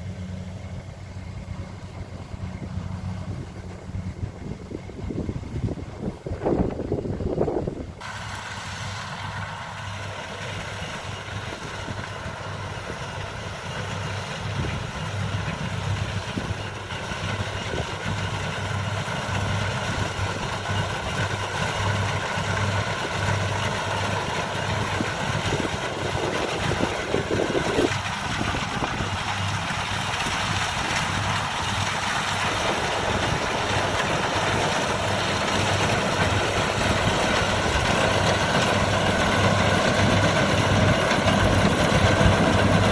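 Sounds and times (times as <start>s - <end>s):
diesel engine throbbing: 0.0s - 42.9s
machinery mechanical whine: 0.0s - 42.9s.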